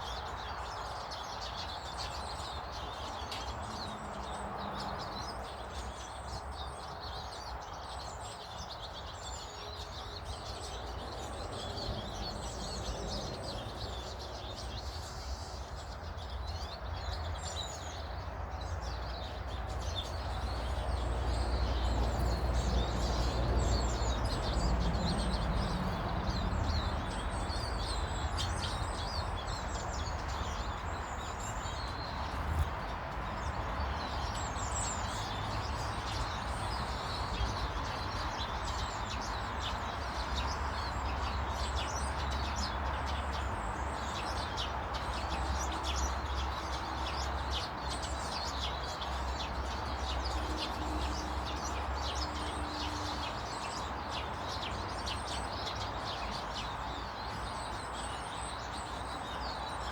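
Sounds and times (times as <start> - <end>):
birds chirping and twittering: 0.0 - 59.9.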